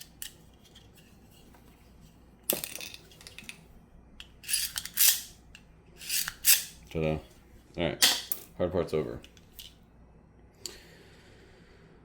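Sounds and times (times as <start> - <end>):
metal parts clinking: 4.4 - 5.3.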